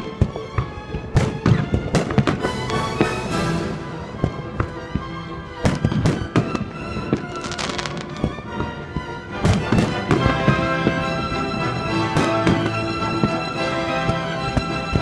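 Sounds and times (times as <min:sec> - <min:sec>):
music with steady tones: 0:00.0 - 0:15.0
fireworks crackling: 0:02.2 - 0:08.8.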